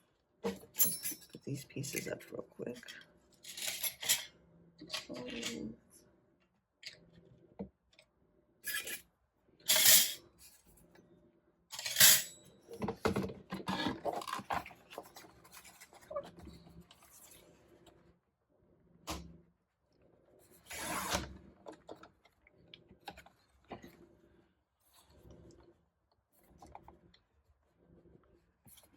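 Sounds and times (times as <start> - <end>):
small scrapes and clicks: 13.8 - 18.0, 24.8 - 27.3.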